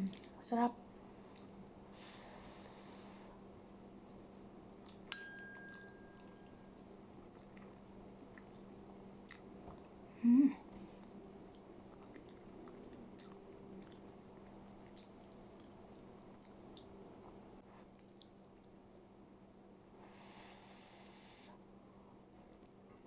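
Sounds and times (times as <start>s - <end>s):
person chewing pasta: 3.8s - 17.0s, 17.8s - 19.0s
sharp ringing clink: 5.1s - 6.7s.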